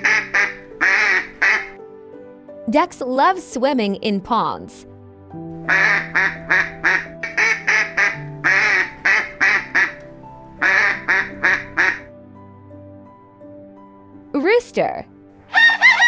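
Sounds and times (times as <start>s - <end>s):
duck quacking: 0.0s - 1.8s, 5.7s - 10.0s, 10.6s - 12.1s, 15.5s - 16.0s
soft background music: 0.0s - 16.0s.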